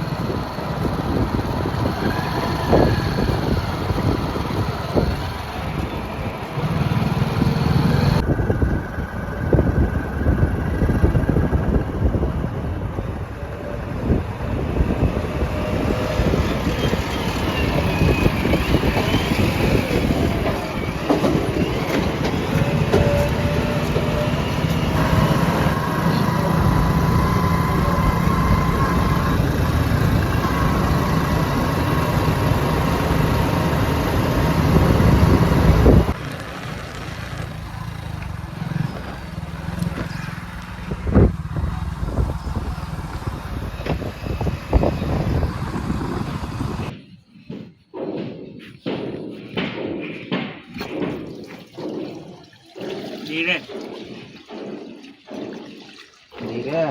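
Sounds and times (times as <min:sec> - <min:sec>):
backhoe diesel engine and hydraulics: 0:00.0 - 0:55.6
sharp knocks: 0:47.5 - 0:55.9.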